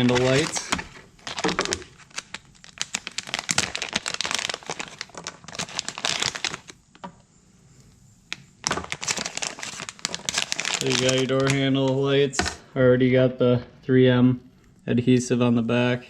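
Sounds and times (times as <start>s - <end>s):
plastic packaging crinkling: 0.0s - 7.0s, 8.3s - 12.6s.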